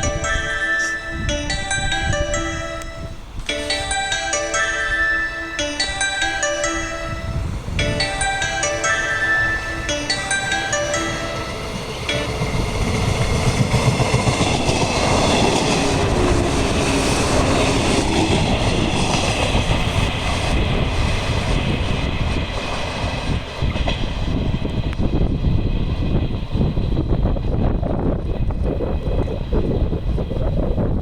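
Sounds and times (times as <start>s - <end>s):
high steady tones: 0.0s - 23.2s
train wheel and rail noise: 0.0s - 31.0s.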